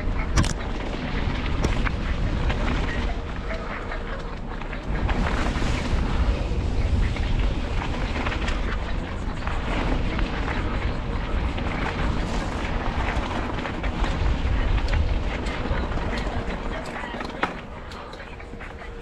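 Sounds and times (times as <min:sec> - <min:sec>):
bike tyre noise: 0:00.0 - 0:19.0
wind rumbling on microphone: 0:00.0 - 0:19.0
bike rattles and knocks: 0:11.3 - 0:19.0.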